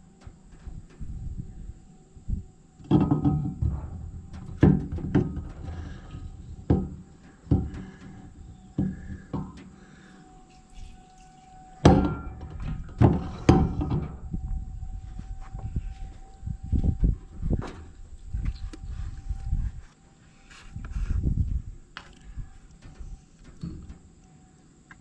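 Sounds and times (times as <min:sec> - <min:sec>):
metal parts clunking and knocking: 0:02.8 - 0:14.3.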